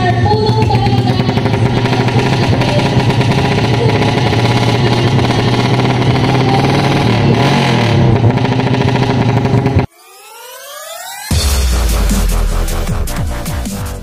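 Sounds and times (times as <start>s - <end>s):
motorcycle engine running loudly: 0.0s - 9.9s.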